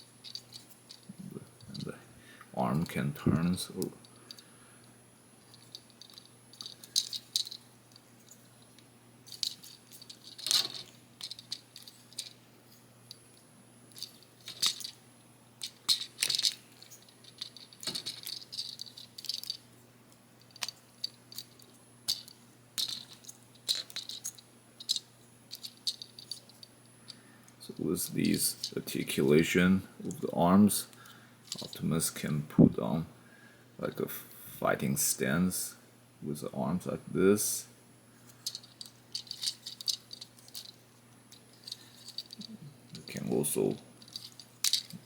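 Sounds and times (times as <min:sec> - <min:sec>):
plastic parts rattling: 0:00.2 - 0:01.9, 0:05.4 - 0:12.4, 0:13.9 - 0:15.0, 0:15.6 - 0:19.6, 0:20.4 - 0:26.7, 0:31.0 - 0:31.8, 0:38.3 - 0:45.0.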